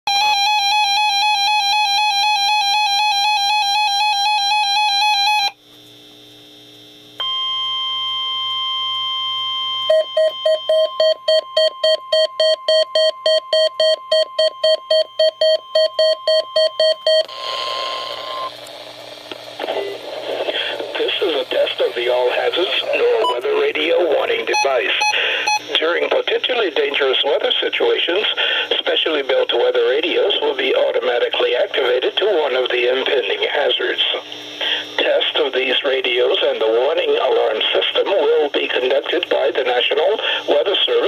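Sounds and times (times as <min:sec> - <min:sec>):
radio noise: 0:17.2 - 0:41.0
fast electronic beeping: 0:21.5 - 0:25.8.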